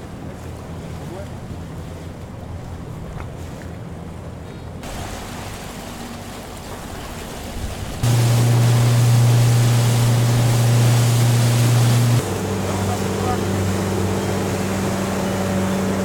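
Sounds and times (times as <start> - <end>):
water: 0.0 - 16.0
wind on microphone: 7.5 - 12.2
boat horn long low blast: 8.0 - 16.0.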